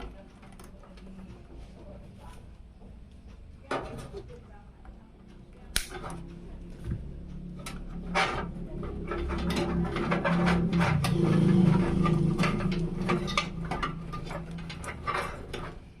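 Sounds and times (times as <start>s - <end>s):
clicks and knocks of hard parts: 5.7s - 16.0s.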